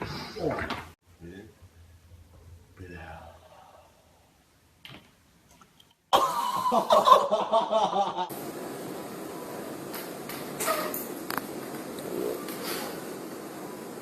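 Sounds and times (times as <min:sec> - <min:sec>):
steady hiss: 0:06.2 - 0:14.0.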